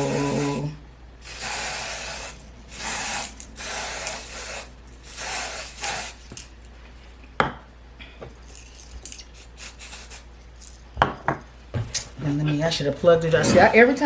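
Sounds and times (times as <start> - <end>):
spray can hissing: 1.2 - 6.5, 9.2 - 10.3.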